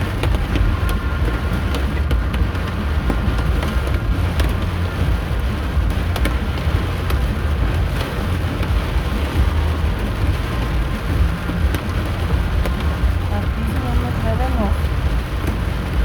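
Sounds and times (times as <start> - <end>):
rain hitting car: 0.0 - 16.0
road and engine rumble: 0.0 - 16.0.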